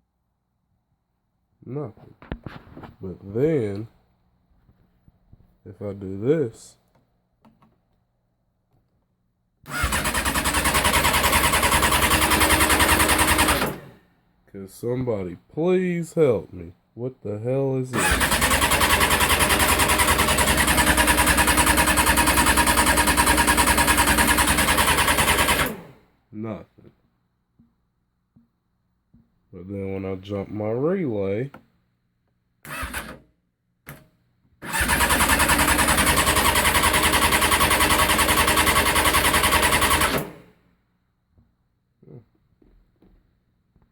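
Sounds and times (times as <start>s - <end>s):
starter motor cranking engine: 9.6s - 14.0s, 17.9s - 26.0s, 32.6s - 33.2s, 34.6s - 40.5s.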